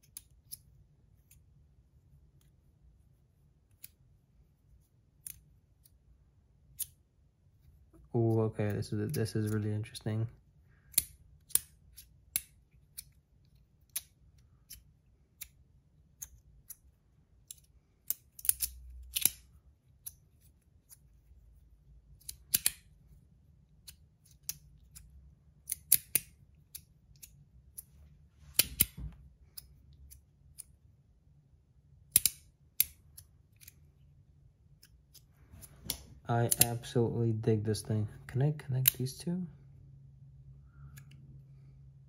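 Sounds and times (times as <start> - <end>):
metal slider pieces clicking: 16.2 - 20.2, 22.2 - 22.9, 23.8 - 27.9, 32.1 - 33.8, 35.9 - 36.8.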